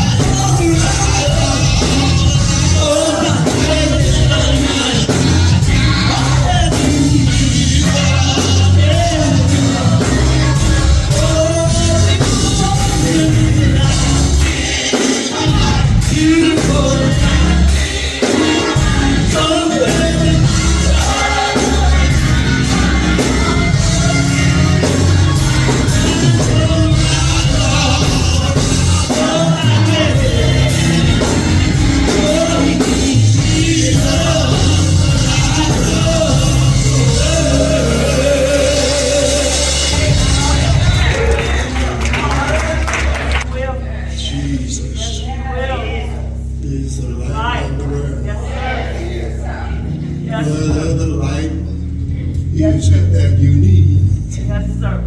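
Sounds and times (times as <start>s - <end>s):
steady drum beat: 0.0s - 43.4s
band with heavy bass: 0.0s - 55.0s
gospel singing: 0.0s - 55.0s.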